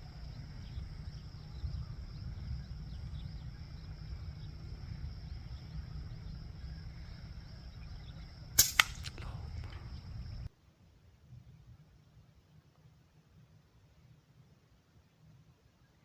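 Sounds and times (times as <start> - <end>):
high insect drone: 0.0 - 10.5
low wind rumble: 0.0 - 15.8
air rifle firing with sharp crack: 8.6 - 9.8
small snap: 8.6 - 9.8.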